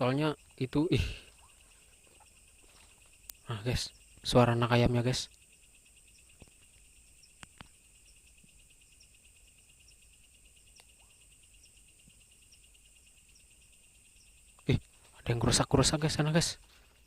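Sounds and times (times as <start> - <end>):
crickets trilling: 0.0 - 17.0
small high peeps: 0.3 - 15.4
faint clicks: 1.3 - 3.5, 5.3 - 5.5, 6.2 - 8.6, 10.7 - 12.6.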